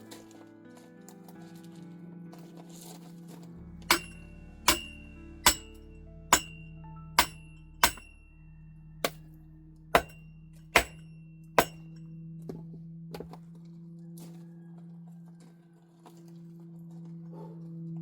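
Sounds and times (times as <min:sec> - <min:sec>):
quiet background music: 0:00.0 - 0:18.0
sharp ringing clinks: 0:03.9 - 0:09.2, 0:10.0 - 0:12.0.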